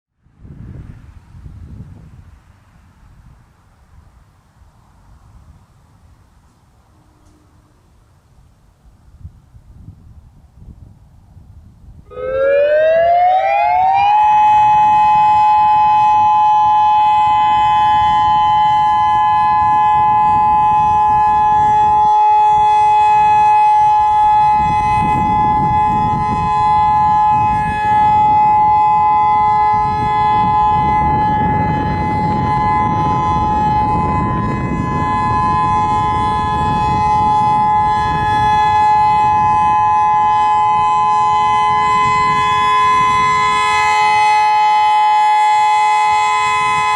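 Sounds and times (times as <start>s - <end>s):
outdoor warning siren: 6.7s - 8.3s, 12.0s - 46.9s.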